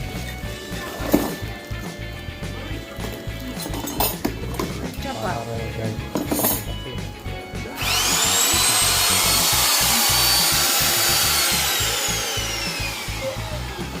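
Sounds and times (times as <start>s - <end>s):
background music with steady beat: 0.0s - 14.0s
router motor whining: 7.8s - 14.0s.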